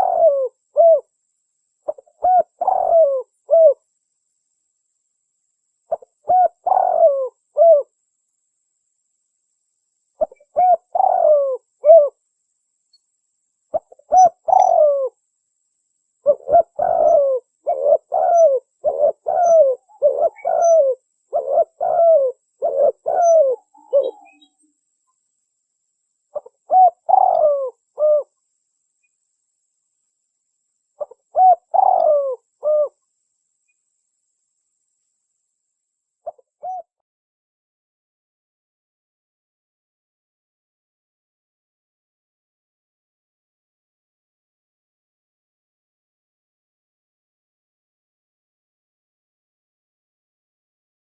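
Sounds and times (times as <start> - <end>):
dove cooing: 0.0 - 1.1, 1.9 - 3.8, 5.9 - 7.9, 10.2 - 12.2, 13.7 - 15.2, 16.2 - 24.6, 26.3 - 28.4, 31.0 - 33.0, 36.2 - 37.0.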